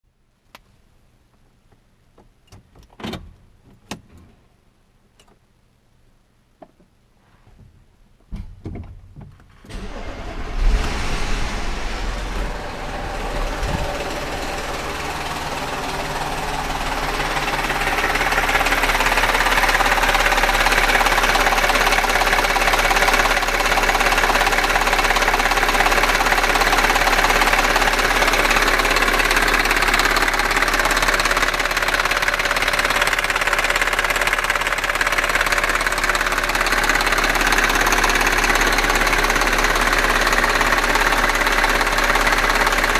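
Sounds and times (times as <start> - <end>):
car engine cranking and starting: 9.4 - 42.9
engine running with ticking knock: 12.4 - 42.9.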